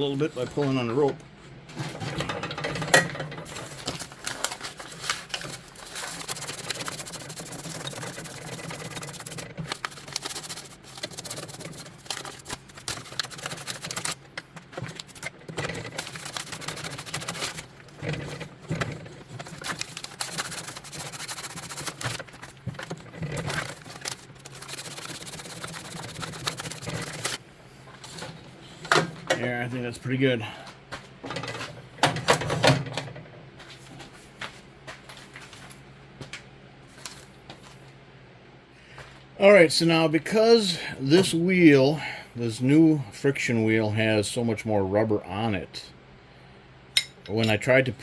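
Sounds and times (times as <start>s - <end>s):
sandpaper scraping metal: 4.7s - 14.2s, 14.8s - 18.4s, 19.3s - 27.4s.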